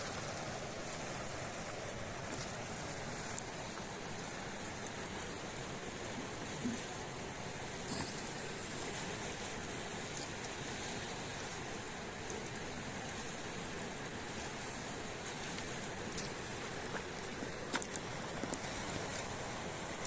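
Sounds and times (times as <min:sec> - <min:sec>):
water rushing: 0:00.0 - 0:20.0
faint ticks: 0:03.2 - 0:03.9.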